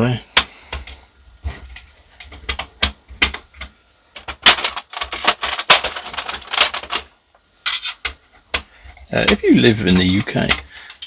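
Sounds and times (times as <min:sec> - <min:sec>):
metal computer parts clicking: 0:04.2 - 0:11.0.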